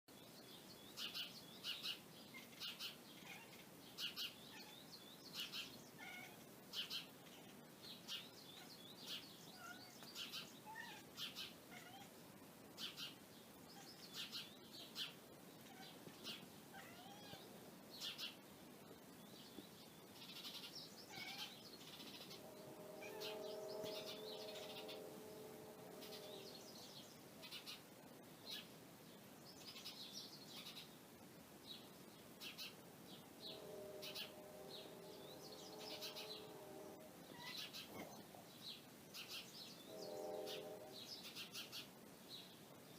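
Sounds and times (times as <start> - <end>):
small birds chirping: 0.1 - 42.9
cat chattering call: 20.3 - 21.6, 37.3 - 38.3.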